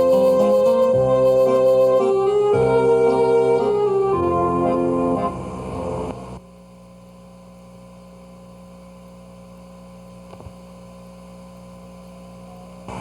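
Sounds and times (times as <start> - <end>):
organ-like keyboard music: 0.0 - 6.4
electrical mains hum: 0.0 - 13.0.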